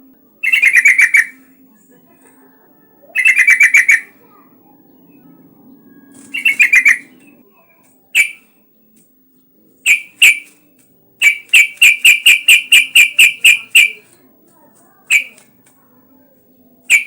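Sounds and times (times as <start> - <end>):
bird calling in sharp notes: 0.4 - 1.6, 3.1 - 4.3, 6.1 - 7.4, 8.1 - 8.5, 9.8 - 10.6, 11.2 - 14.2, 15.1 - 15.5.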